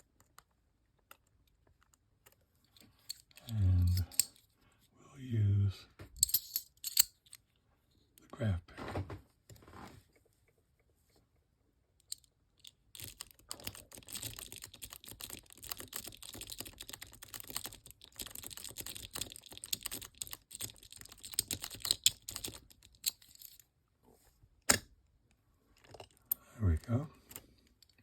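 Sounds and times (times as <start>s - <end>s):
lock pick raking padlock: 2.8s - 4.4s, 6.2s - 7.4s, 12.0s - 23.6s.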